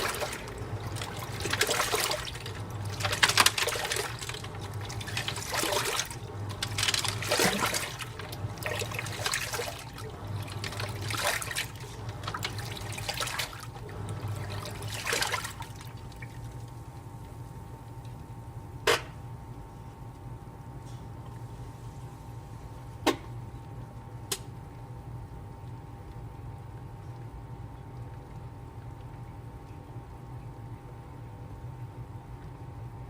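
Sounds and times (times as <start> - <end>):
washing machine water sloshing: 0.0 - 17.3.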